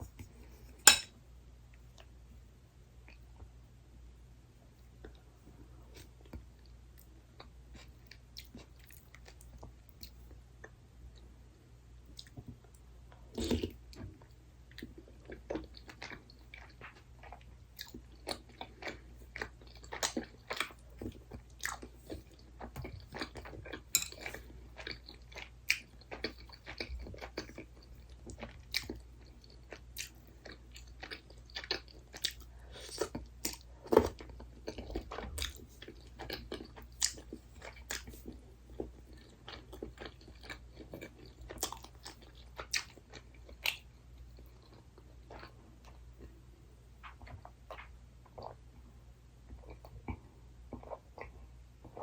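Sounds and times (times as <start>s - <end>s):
chewing crisp snack food: 5.9s - 11.3s, 12.1s - 46.4s.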